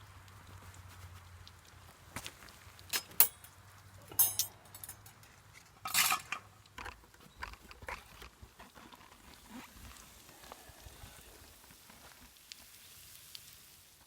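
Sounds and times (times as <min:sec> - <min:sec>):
metal cookware clinking: 0:03.0 - 0:06.5.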